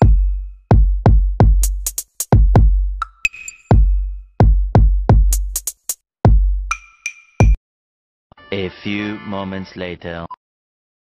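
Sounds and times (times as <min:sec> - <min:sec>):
deep kick drums: 0:00.0 - 0:03.0, 0:03.7 - 0:05.6, 0:06.2 - 0:06.7.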